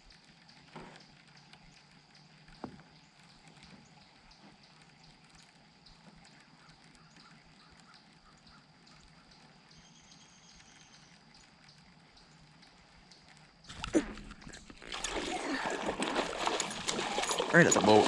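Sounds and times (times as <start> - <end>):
fish splashing at the surface: 13.8 - 18.0.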